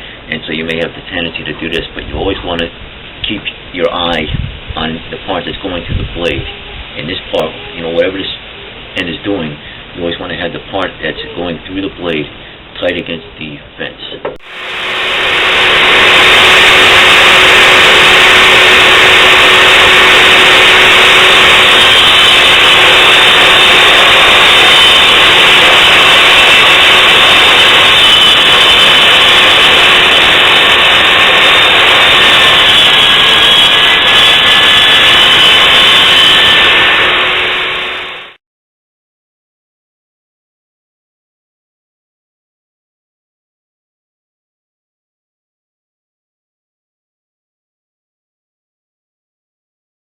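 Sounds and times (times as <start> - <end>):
table saw ripping wood: 14.4 - 38.3.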